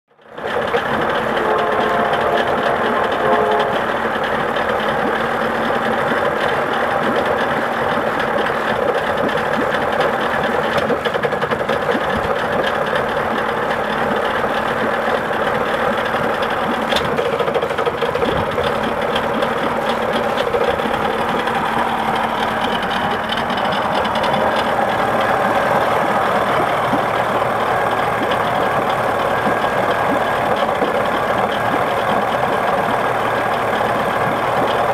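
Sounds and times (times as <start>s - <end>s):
outboard motor idling roughly: 0.1s - 34.9s.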